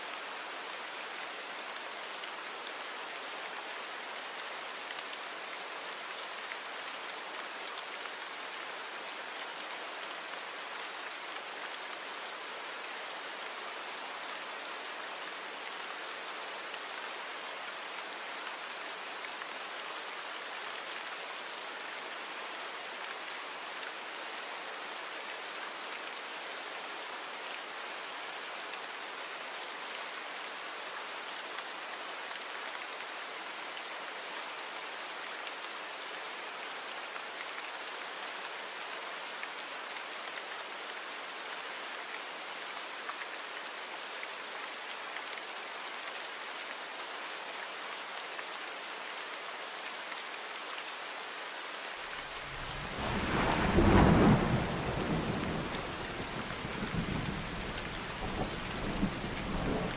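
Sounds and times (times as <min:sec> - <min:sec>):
steady rain: 0:00.0 - 0:59.9
thunder rumbling: 0:52.5 - 0:57.6.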